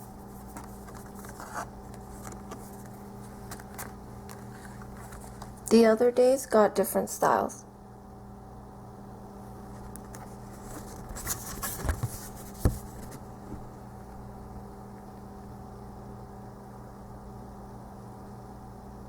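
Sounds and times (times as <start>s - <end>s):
paper rustling: 0.0s - 5.6s, 10.1s - 13.3s
low electrical hum: 0.0s - 19.0s.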